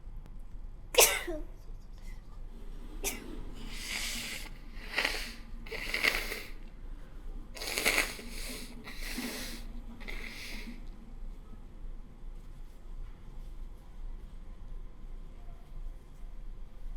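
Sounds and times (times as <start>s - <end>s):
person sniffling through the nose: 3.1s - 6.6s, 7.6s - 10.8s.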